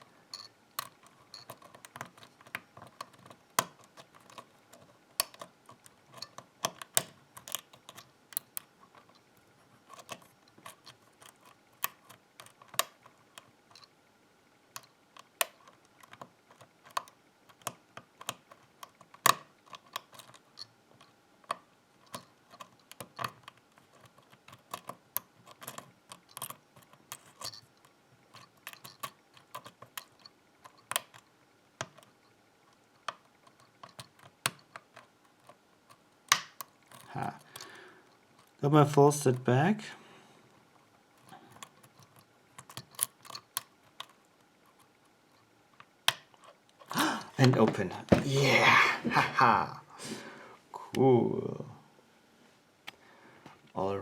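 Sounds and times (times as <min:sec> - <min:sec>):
lock pick clicking: 0:05.1 - 0:08.7, 0:41.5 - 0:44.2.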